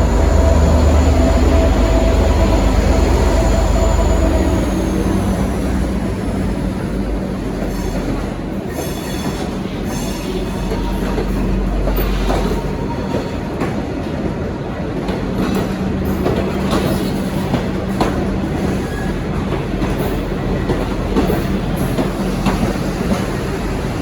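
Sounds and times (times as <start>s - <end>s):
train wheels squealing: 0.0s - 6.4s, 7.6s - 13.4s, 18.4s - 20.6s
diesel locomotive engine rumble: 0.0s - 24.0s.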